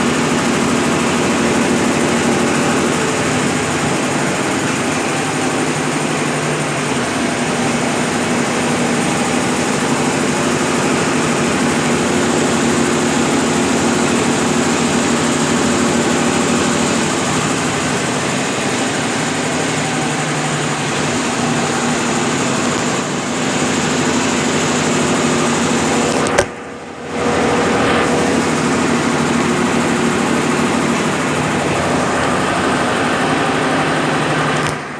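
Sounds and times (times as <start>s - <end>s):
washing machine spinning: 0.0s - 34.9s.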